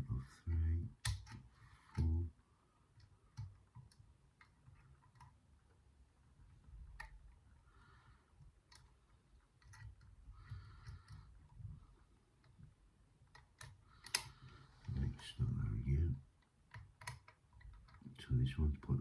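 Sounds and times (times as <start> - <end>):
lock picking clicks and scrapes: 9.6 - 11.4, 13.3 - 14.6, 16.7 - 18.0.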